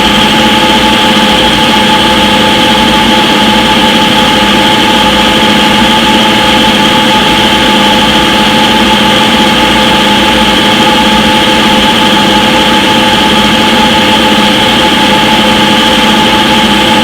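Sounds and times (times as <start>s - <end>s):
washing machine spinning: 0.0s - 17.0s.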